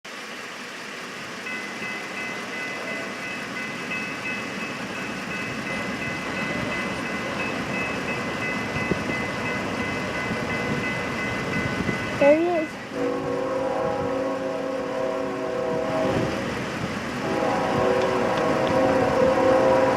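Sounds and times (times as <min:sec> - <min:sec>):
freight train rumbling: 0:00.1 - 0:19.9
high ringing tone: 0:01.4 - 0:13.1.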